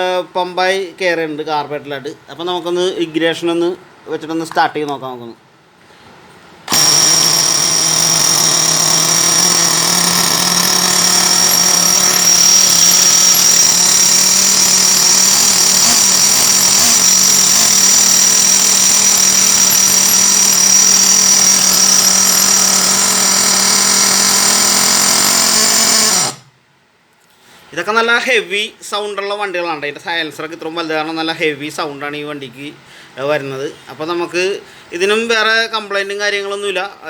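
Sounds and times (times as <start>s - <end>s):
rc car engine running: 6.7s - 26.4s.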